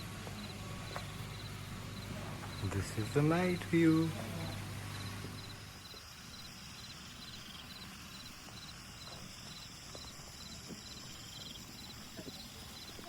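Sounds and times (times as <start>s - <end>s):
cricket chirping: 0.0s - 13.0s.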